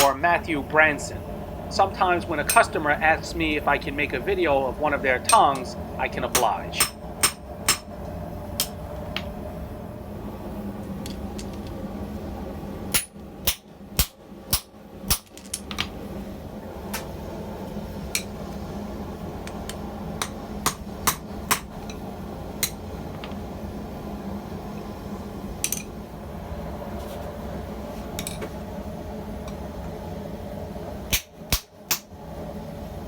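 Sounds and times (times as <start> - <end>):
steady low hum: 0.0 - 33.0
hammer striking steel on anvil: 2.4 - 2.7, 5.3 - 5.7, 6.3 - 7.9, 8.6 - 8.8, 12.9 - 15.2, 19.5 - 22.0.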